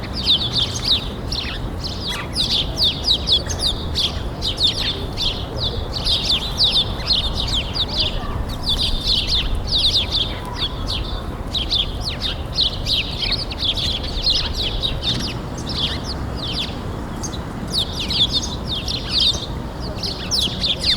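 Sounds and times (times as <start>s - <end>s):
small birds chirping: 0.0s - 20.9s.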